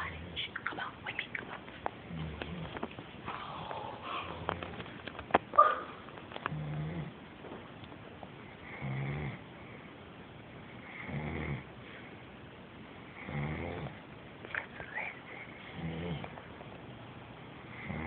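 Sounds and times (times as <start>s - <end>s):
man snoring loudly: 13.2s - 13.9s, 17.8s - 18.0s.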